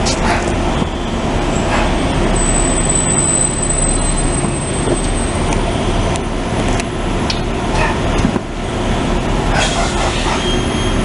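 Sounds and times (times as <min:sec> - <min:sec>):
heavy vehicle engine rumbling: 0:00.0 - 0:11.0
high-pitched whine: 0:00.8 - 0:07.2.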